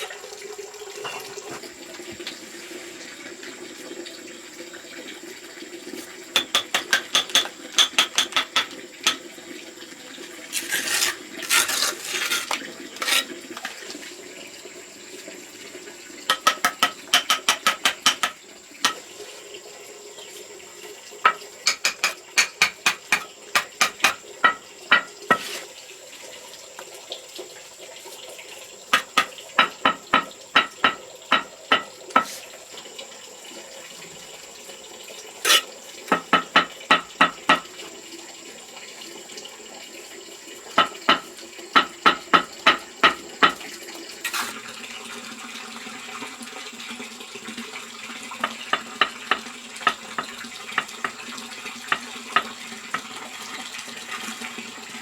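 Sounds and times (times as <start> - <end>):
hand tool tapping wet mortar: 6.4 - 9.3, 10.5 - 13.8, 16.3 - 19.0, 21.2 - 25.7, 28.9 - 32.4, 35.5 - 37.7, 40.8 - 43.6, 48.4 - 51.2, 51.9 - 53.2.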